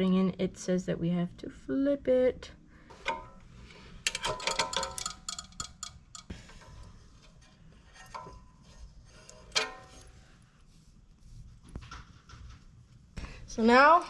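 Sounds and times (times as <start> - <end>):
metal parts clinking: 4.0 - 6.3.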